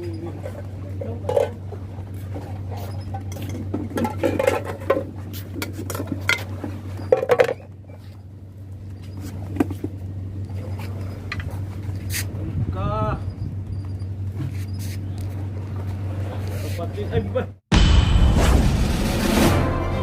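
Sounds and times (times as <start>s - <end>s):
low hum: 17.7s - 20.0s.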